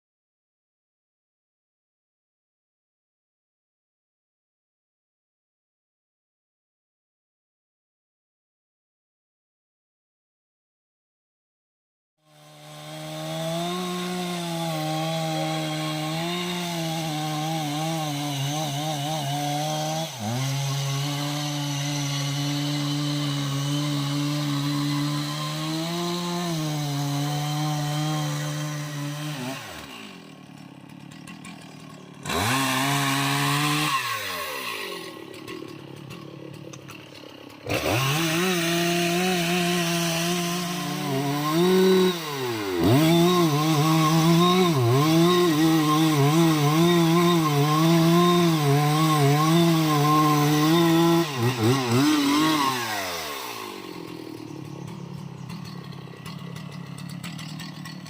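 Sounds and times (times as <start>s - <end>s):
chainsaw cutting wood: 12.2s - 58.0s.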